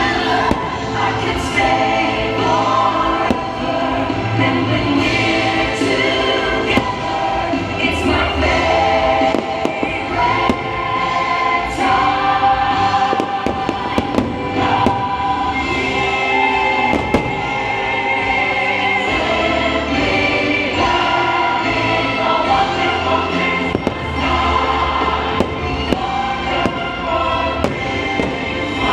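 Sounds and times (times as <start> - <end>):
fireworks bangs: 0.0 - 1.8, 3.0 - 4.4, 12.8 - 18.0, 23.6 - 24.5, 25.3 - 28.9
choir singing with music: 0.0 - 28.9.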